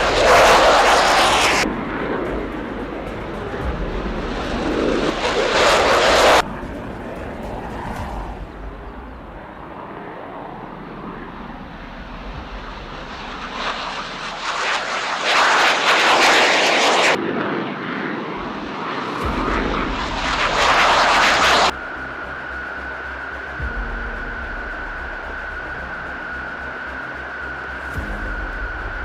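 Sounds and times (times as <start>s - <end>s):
fighter jet engine rushing: 0.0s - 29.0s.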